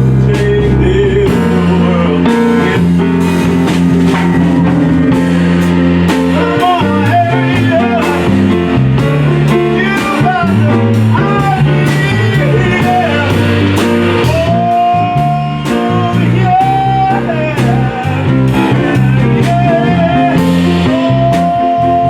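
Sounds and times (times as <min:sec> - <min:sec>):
drum kit beat: 0:00.0 - 0:22.0
lead instrument bending notes: 0:00.0 - 0:22.0
walking bass guitar: 0:00.0 - 0:22.0.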